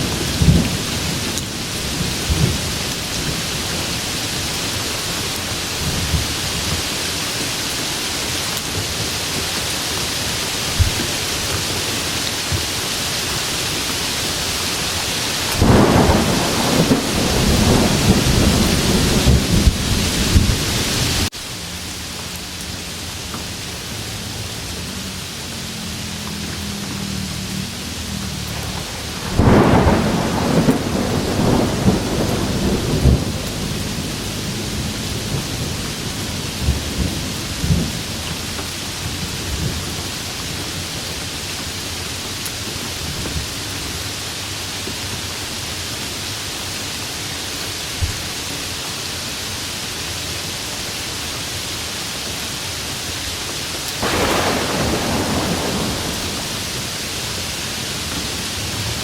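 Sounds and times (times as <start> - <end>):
rain falling steadily: 0.0 - 59.0
thunder rumbling: 14.4 - 21.3, 26.7 - 40.6, 54.0 - 58.3.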